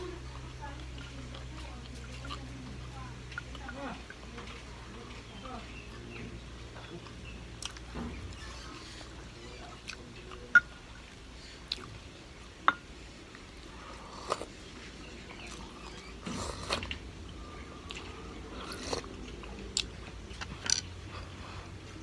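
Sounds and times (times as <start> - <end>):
person biting and chewing food: 7.6 - 7.9, 13.9 - 14.5, 15.4 - 17.0, 17.9 - 20.9.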